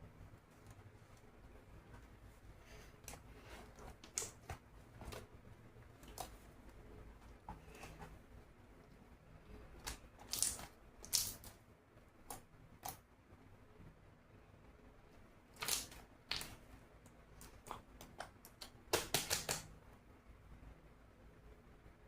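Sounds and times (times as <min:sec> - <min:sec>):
slime squeezed with sticky pops: 0:09.8 - 0:11.6, 0:15.6 - 0:16.6, 0:17.4 - 0:19.6.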